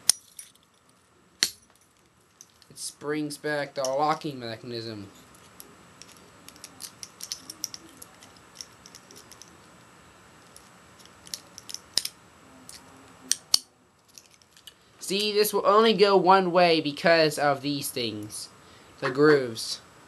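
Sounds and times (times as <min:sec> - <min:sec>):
padlock and key clicking: 0:05.6 - 0:09.6, 0:10.5 - 0:12.2.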